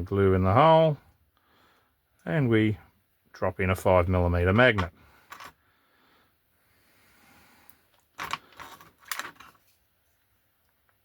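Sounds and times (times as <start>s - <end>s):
small plastic parts clicking: 7.9s - 9.8s.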